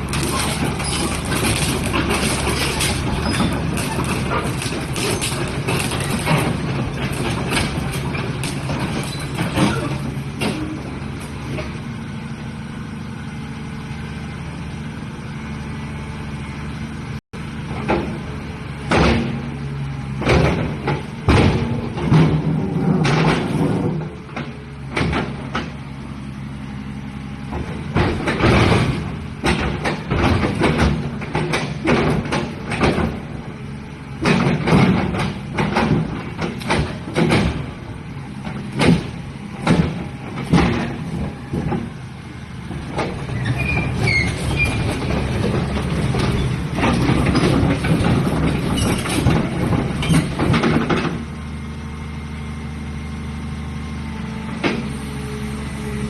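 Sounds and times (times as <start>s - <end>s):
sharp metal knocks and clanks: 0.0s - 11.8s, 18.8s - 19.6s, 20.2s - 25.8s, 27.5s - 33.3s, 34.2s - 37.8s, 38.4s - 42.0s, 42.7s - 51.3s
excavator diesel engine running: 0.0s - 56.0s.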